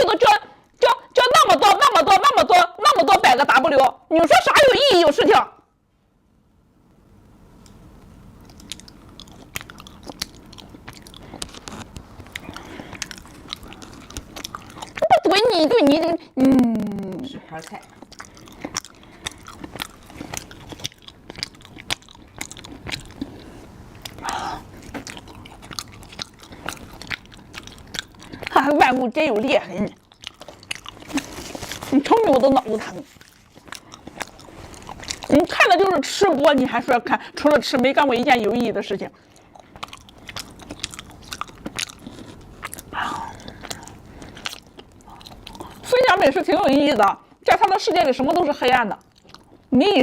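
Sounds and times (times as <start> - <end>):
person chewing crunchy food: 8.4 - 15.4, 16.3 - 46.1, 49.0 - 49.7
person murmuring: 16.4 - 17.8.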